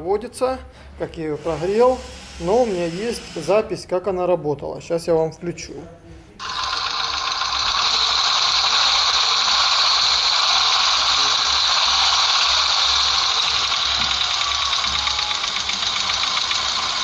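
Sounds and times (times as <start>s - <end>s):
car engine running with ticking: 6.4s - 17.0s.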